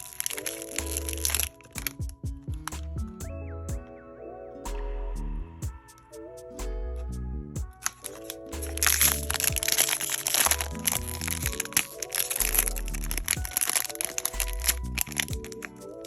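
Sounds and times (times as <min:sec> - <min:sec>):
toy packaging crackling: 0:00.0 - 0:02.0, 0:07.8 - 0:16.0
background music with beat: 0:00.0 - 0:16.0.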